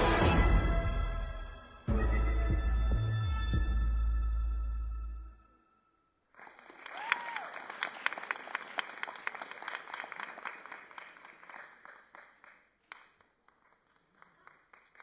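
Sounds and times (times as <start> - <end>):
audience applauding: 6.4 - 15.0
person cheering: 6.9 - 7.7.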